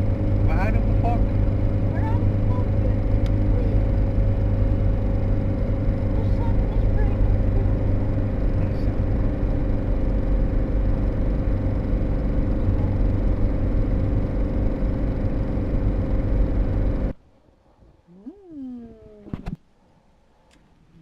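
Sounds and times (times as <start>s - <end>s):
constant hum: 0.0s - 21.0s
van engine and road noise: 0.0s - 21.0s.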